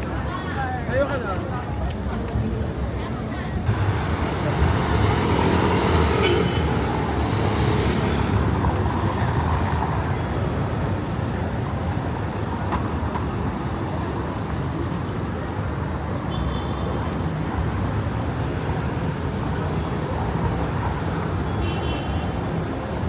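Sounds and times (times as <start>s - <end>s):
traffic rumble: 0.0s - 23.0s
vehicle passing: 3.7s - 10.6s.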